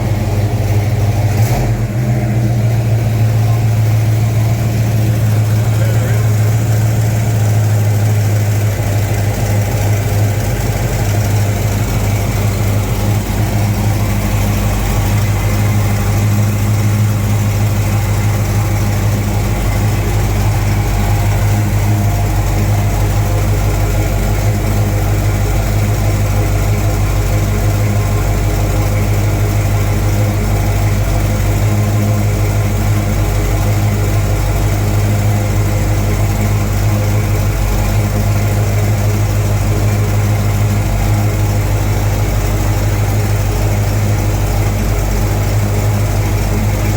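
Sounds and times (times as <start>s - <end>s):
car engine idling: 0.0s - 46.9s.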